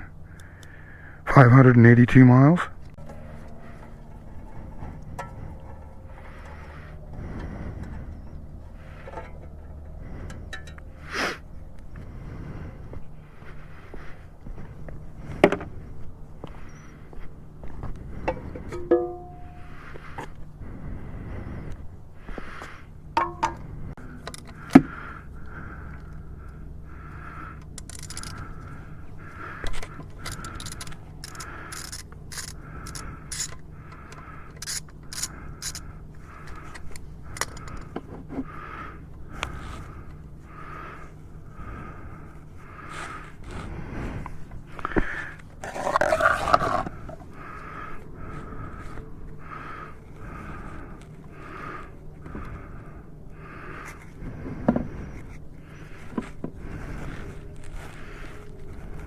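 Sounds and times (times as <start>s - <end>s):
steady low hum: 0.0s - 59.0s
metallic clank: 18.3s - 19.6s, 23.2s - 23.6s
metal tool clicks: 29.8s - 35.8s.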